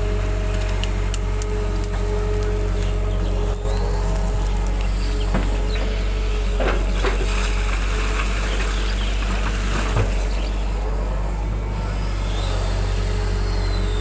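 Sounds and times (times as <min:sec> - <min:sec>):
diesel engine running: 0:00.0 - 0:14.0
machine knocks and clanks: 0:05.2 - 0:07.6.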